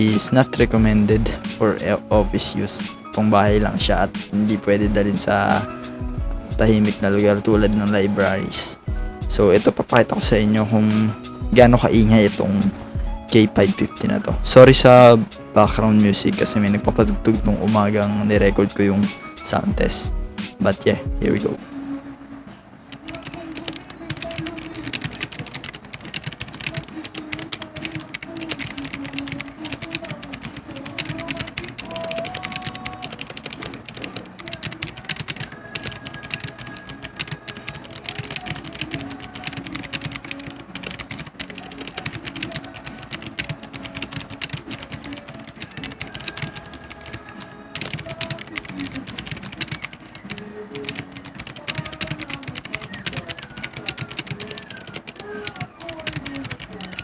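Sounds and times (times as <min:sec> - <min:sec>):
fast typing on clicky keyboard: 0:00.0 - 0:20.1, 0:22.9 - 0:57.0
faint background music: 0:00.0 - 0:57.0.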